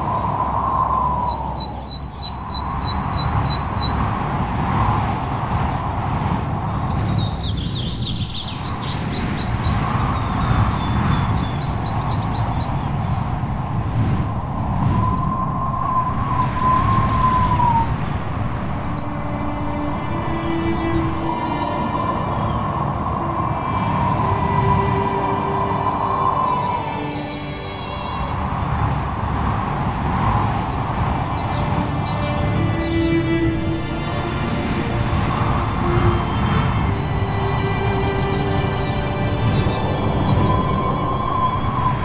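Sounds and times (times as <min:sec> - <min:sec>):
songbirds singing: 0:00.0 - 0:04.1, 0:05.9 - 0:23.4, 0:26.0 - 0:28.5, 0:30.2 - 0:34.7, 0:35.8 - 0:42.0
low background rumble: 0:17.9 - 0:42.0
faint wavering siren-like tone: 0:39.7 - 0:42.0.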